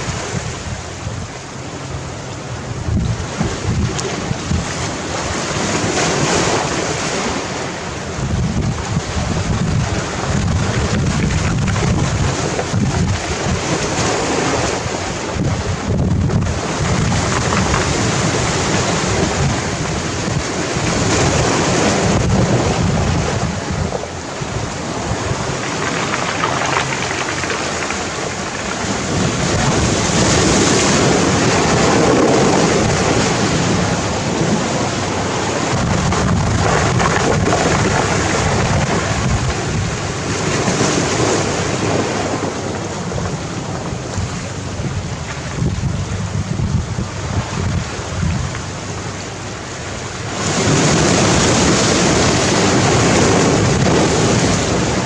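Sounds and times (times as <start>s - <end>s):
waves breaking on pebble beach: 2.6s - 55.0s.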